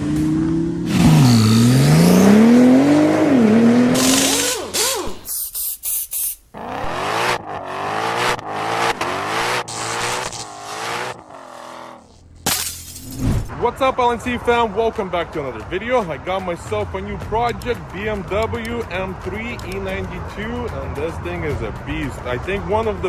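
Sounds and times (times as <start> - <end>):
car engine revving: 0.0 - 5.3, 6.5 - 12.2.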